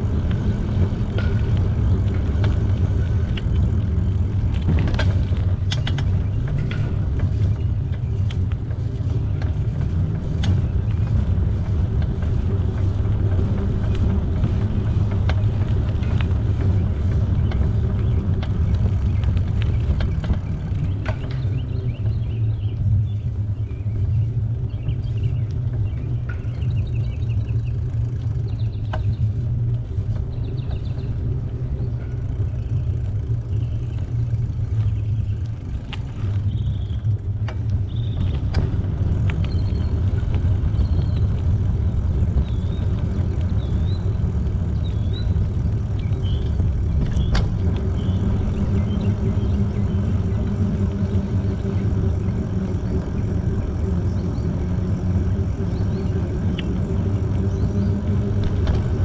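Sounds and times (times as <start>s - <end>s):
bicycle tyre noise: 0.0s - 59.0s
wind rumble: 0.0s - 59.0s.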